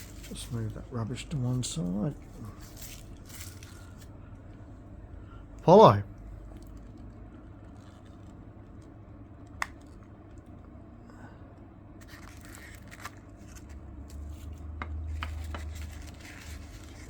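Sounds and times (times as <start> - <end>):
packaging crinkling and rustling: 0.0 - 4.2, 12.0 - 17.0.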